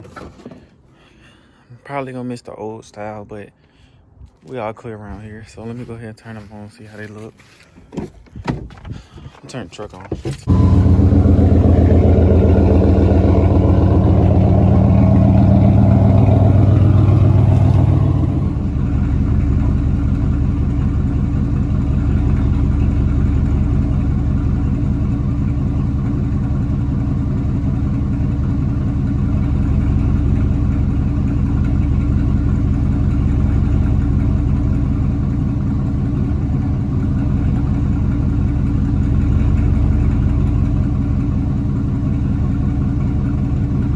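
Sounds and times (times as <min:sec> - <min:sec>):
pickup truck engine idling: 0:10.4 - 0:43.9.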